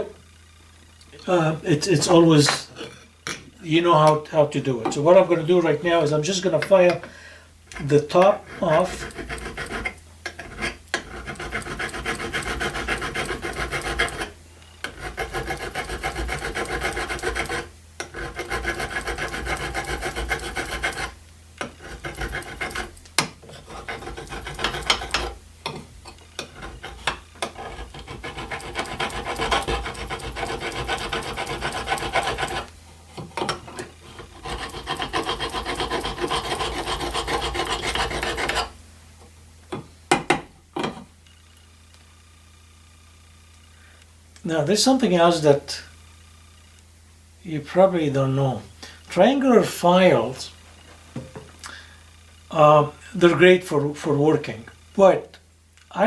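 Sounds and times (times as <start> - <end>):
hand file rasping on metal: 7.7 - 25.4, 26.1 - 38.8.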